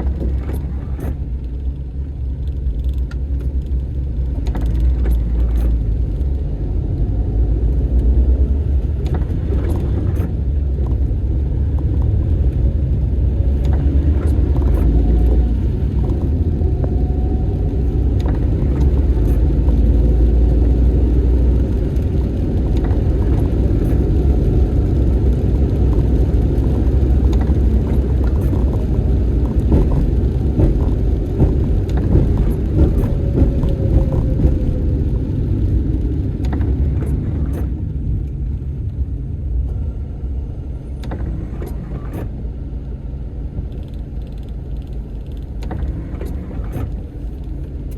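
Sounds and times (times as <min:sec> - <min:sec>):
car road and engine rumble: 0:00.0 - 0:47.9
faint clicks and knocks: 0:25.7 - 0:38.4.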